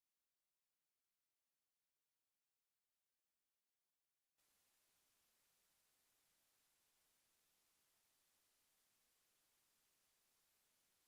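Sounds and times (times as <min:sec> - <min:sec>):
faint steady hiss: 0:04.4 - 0:11.0.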